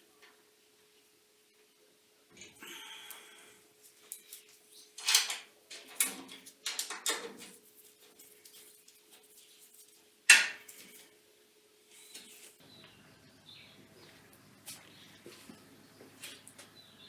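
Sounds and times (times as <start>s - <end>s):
faint steady hum: 0.0s - 17.0s
knocks clinks and scrapes: 3.9s - 11.1s.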